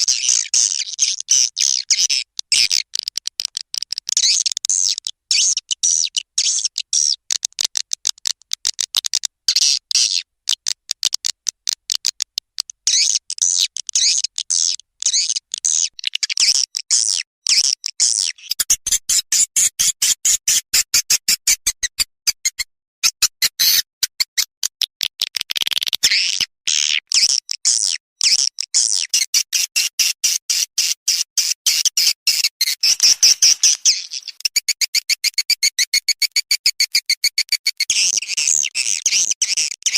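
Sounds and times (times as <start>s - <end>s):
high-pitched bird twittering: 31.8s - 38.7s.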